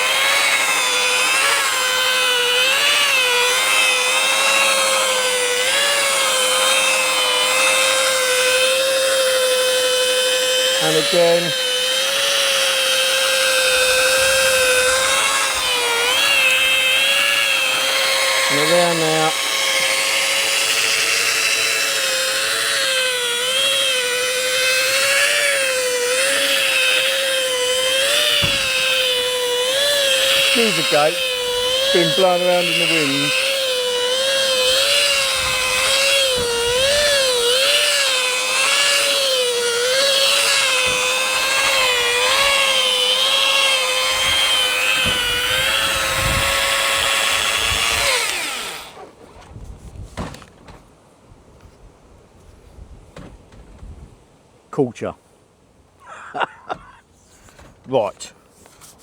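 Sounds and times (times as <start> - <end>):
power polisher motor whining: 0.0 - 49.1
low thump: 28.4 - 28.8.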